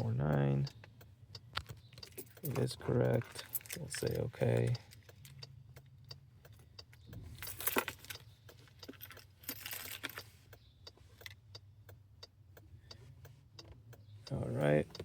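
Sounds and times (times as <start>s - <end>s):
car engine humming: 0.0s - 15.0s
car keys jangling: 1.6s - 6.0s, 6.7s - 10.6s.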